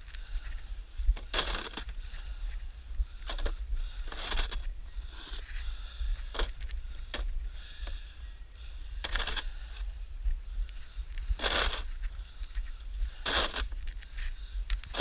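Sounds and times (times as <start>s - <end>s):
snow crunching and scraping: 0.0s - 6.6s, 9.1s - 10.0s, 10.9s - 15.0s
steady low rumble: 0.0s - 15.0s.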